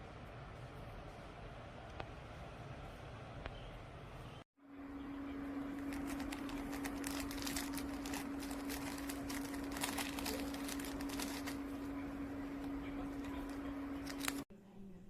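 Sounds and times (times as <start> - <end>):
steady low hum: 0.0 - 15.0
plastic packaging crinkling: 5.6 - 14.5.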